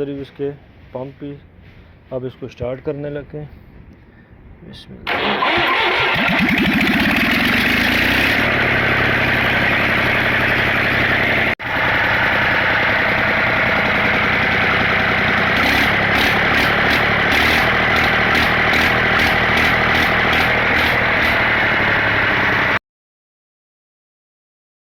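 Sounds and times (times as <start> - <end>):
diesel engine running: 5.1 - 22.8.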